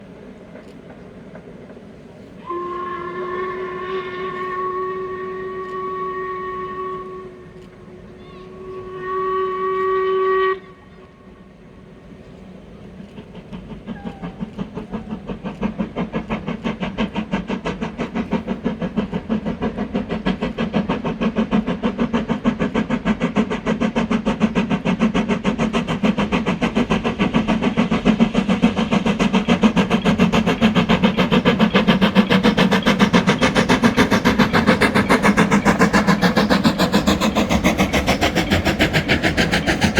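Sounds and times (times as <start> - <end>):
train chuffing and rumble: 0.0 - 39.9
steam locomotive whistle: 2.4 - 11.8.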